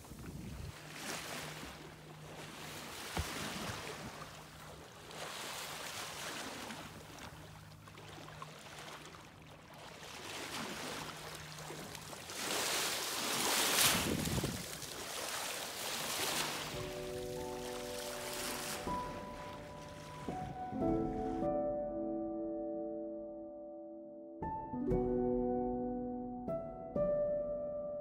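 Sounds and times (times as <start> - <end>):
water splashing past boat hull: 0.0 - 21.4
wind: 0.0 - 21.6.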